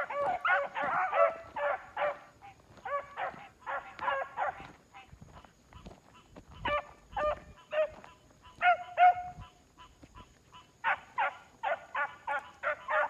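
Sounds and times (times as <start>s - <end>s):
puppies barking and yelping: 0.0s - 4.8s, 6.6s - 9.4s, 10.8s - 13.0s.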